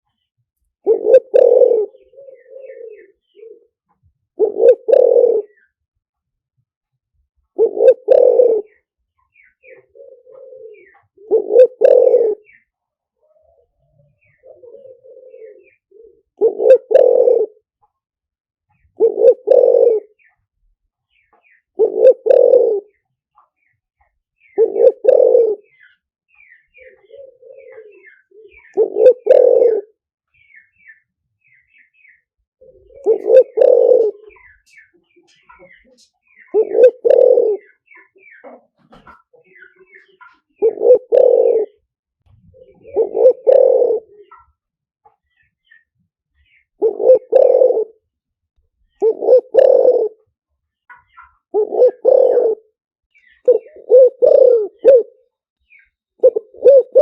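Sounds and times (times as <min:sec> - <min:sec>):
faint small birds chirping: 0:00.0 - 0:18.1, 0:18.7 - 0:57.0
dove cooing: 0:00.8 - 0:05.8, 0:07.5 - 0:17.7, 0:18.7 - 0:20.4, 0:21.3 - 0:23.6, 0:24.4 - 0:30.5, 0:32.6 - 0:44.6, 0:46.4 - 0:48.1, 0:48.9 - 0:57.0.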